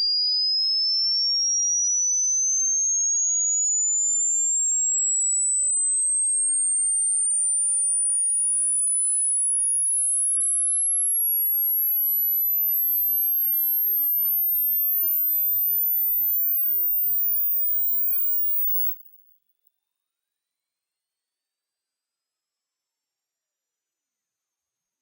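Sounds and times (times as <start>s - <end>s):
rising high-pitched pure tone: 15.6s - 19.0s.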